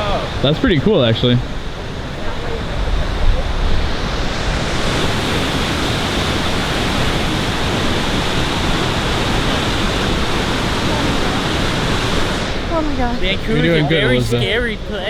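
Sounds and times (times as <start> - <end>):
distant river rushing: 0.0 - 15.0.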